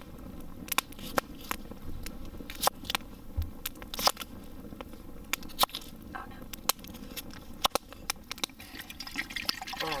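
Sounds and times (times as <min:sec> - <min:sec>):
sharp clicks and snaps: 0:00.4 - 0:05.9, 0:06.5 - 0:08.6
dull low thump: 0:03.3 - 0:03.6.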